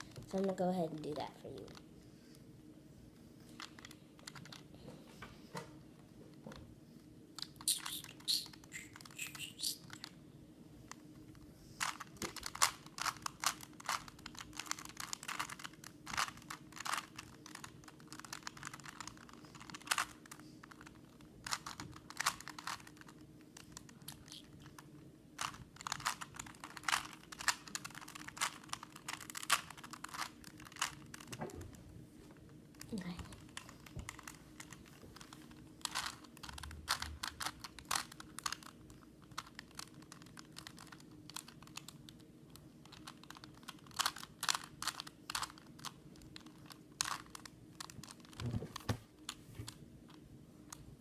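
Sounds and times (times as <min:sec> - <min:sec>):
plastic puzzle cube clicking: 0:03.6 - 0:04.6, 0:07.4 - 0:10.2, 0:11.8 - 0:24.8, 0:25.4 - 0:31.4, 0:32.7 - 0:48.4.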